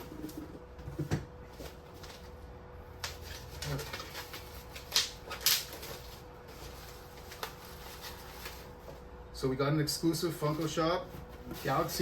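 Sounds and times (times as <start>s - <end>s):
packaging being handled: 3.0s - 9.0s
sharp rips of packaging: 3.5s - 6.0s.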